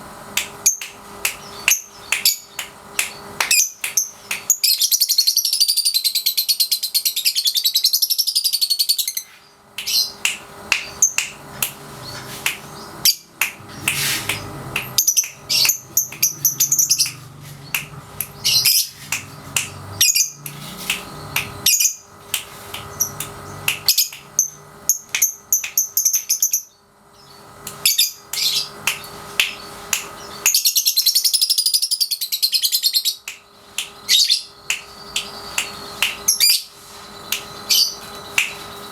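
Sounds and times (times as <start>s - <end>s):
sharp bird chirps: 12.0s - 22.1s, 22.9s - 38.9s.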